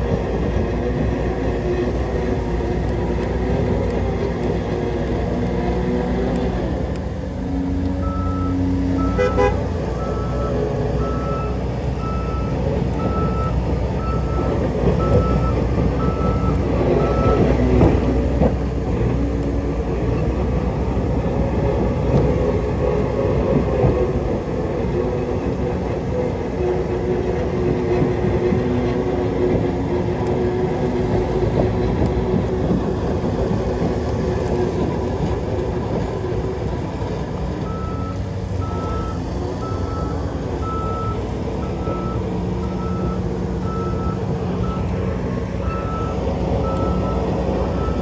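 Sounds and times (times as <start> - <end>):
diesel engines running: 0.0 - 48.0
reversing alarm beeping: 8.0 - 17.6, 37.6 - 45.0, 45.6 - 48.0
short horn toot: 9.0 - 9.7.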